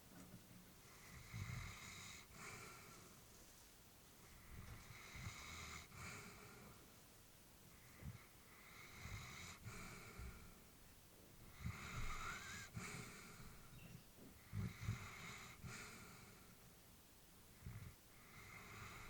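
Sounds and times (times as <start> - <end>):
dog breathing in sleep: 0.9 - 3.3, 4.3 - 6.9, 7.7 - 10.6, 11.5 - 16.6, 17.6 - 19.0.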